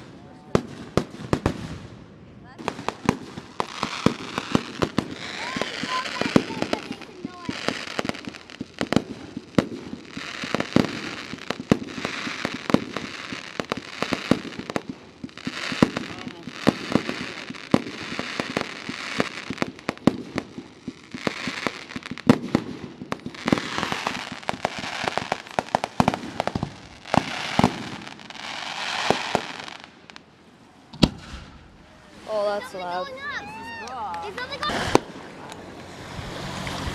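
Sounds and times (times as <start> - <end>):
fireworks bangs: 0.0 - 36.9
fireworks crackling hiss: 0.0 - 36.9.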